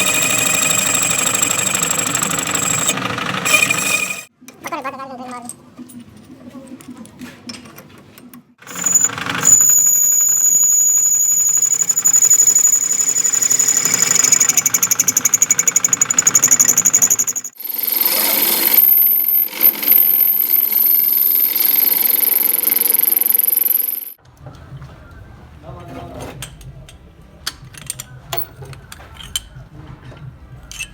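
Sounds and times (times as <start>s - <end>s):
power grinder whining on metal: 0.0s - 4.3s, 8.7s - 24.2s.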